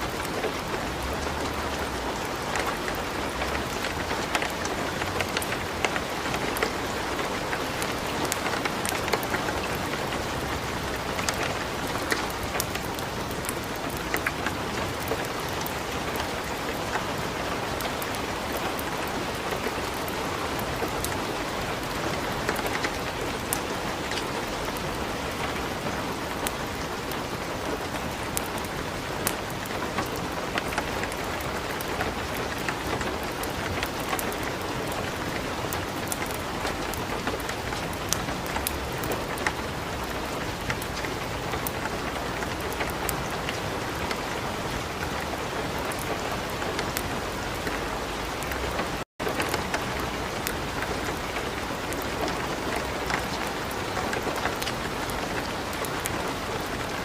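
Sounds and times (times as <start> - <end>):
light rain: 0.0 - 57.0
wood fire crackling: 0.1 - 57.0.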